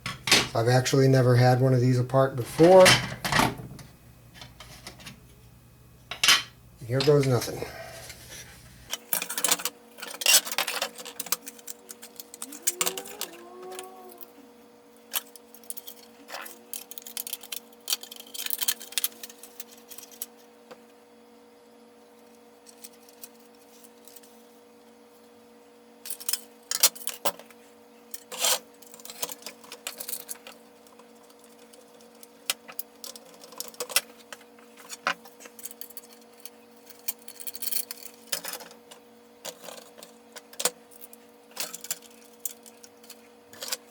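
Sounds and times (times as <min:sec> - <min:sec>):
steady low hum: 0:00.0 - 0:09.0
plastic toy parts clicking: 0:10.3 - 0:13.9.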